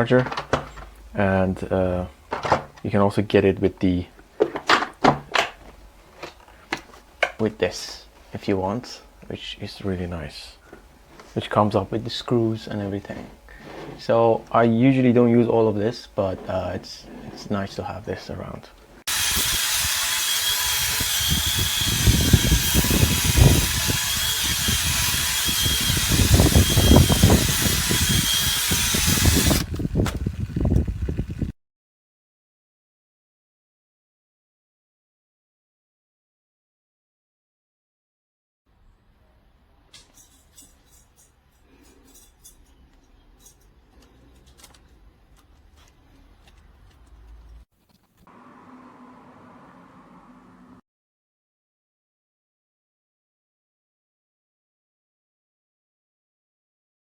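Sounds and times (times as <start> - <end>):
clunks: 0.0 - 1.1
cordless drill motor whine: 19.1 - 30.9.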